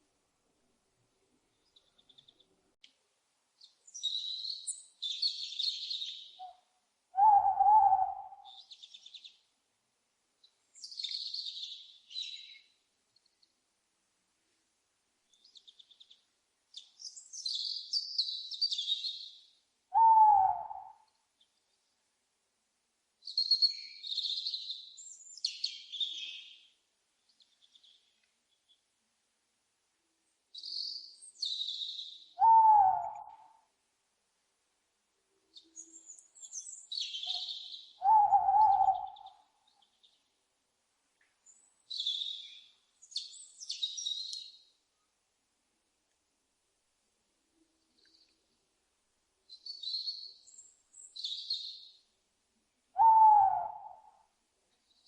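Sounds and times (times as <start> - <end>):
owl hooting: 7.2 - 8.7, 19.9 - 21.1, 32.4 - 33.6, 37.1 - 39.5, 53.0 - 54.3.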